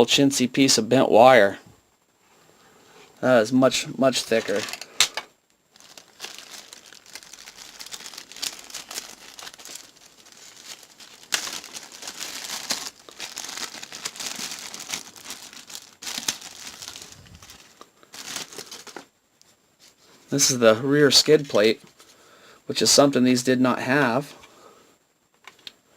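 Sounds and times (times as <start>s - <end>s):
packaging crinkling and tearing: 4.2s - 19.1s.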